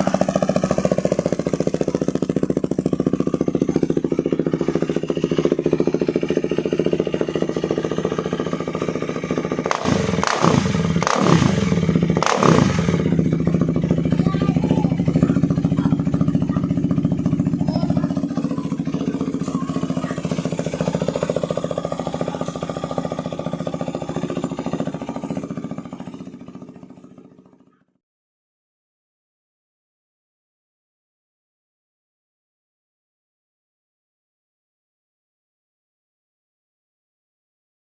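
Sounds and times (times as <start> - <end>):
engine throttle blips: 0.0 - 27.5
motorcycle engine idling: 0.0 - 28.0.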